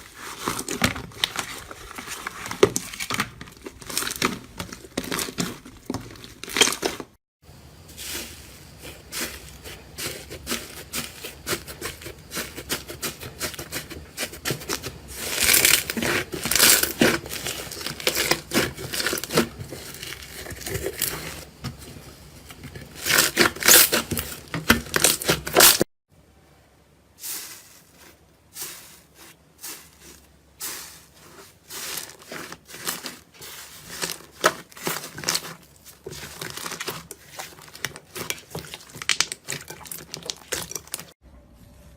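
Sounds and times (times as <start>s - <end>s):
slime crackling and tearing: 14.6s - 21.2s, 23.0s - 25.8s, 31.7s - 41.1s.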